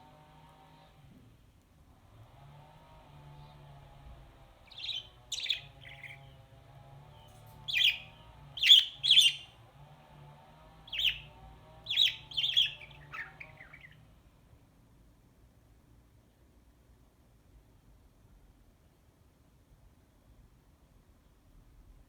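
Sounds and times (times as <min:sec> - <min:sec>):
budgie chirping: 0:04.7 - 0:06.3, 0:07.7 - 0:09.5, 0:10.9 - 0:11.3, 0:11.9 - 0:14.0.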